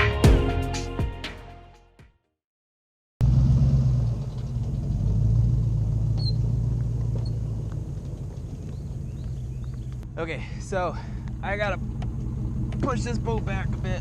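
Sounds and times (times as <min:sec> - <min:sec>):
vehicle engine rumbling: 0:03.2 - 0:14.0.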